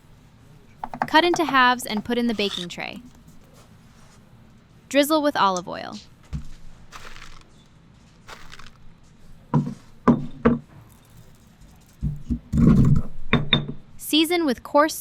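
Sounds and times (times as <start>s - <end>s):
utensils rattling clatter: 1.3s - 3.4s, 6.9s - 7.6s, 8.3s - 8.9s, 10.7s - 12.2s.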